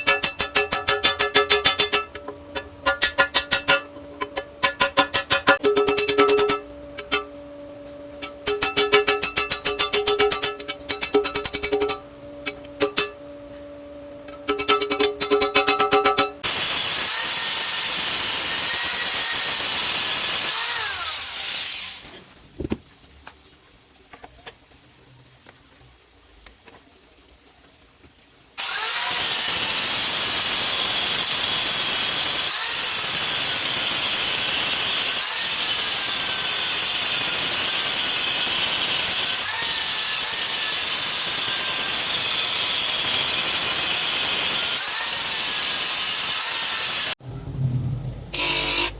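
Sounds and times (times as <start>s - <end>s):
power tool working on metal: 14.5s - 22.2s, 28.6s - 47.2s, 48.4s - 48.9s.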